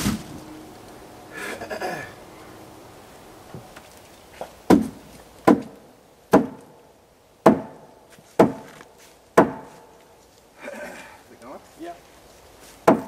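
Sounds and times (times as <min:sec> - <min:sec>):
hammer blows on plywood: 0:07.5 - 0:08.8, 0:09.4 - 0:09.9.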